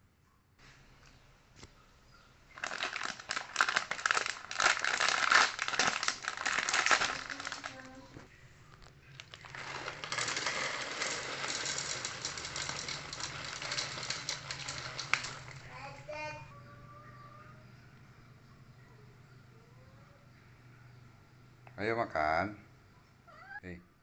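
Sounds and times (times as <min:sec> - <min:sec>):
plastic packet crinkling: 0:02.5 - 0:08.1, 0:09.0 - 0:15.7.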